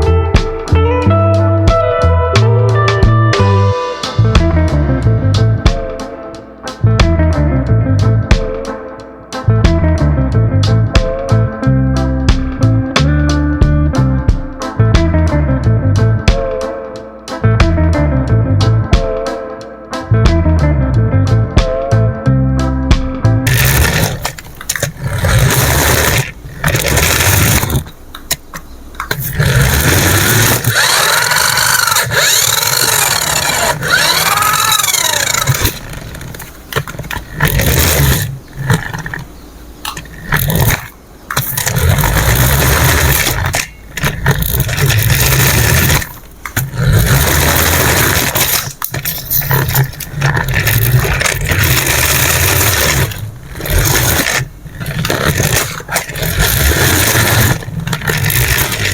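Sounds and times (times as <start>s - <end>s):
toy vehicle motor whirring: 23.5s - 39.3s, 39.9s - 58.9s.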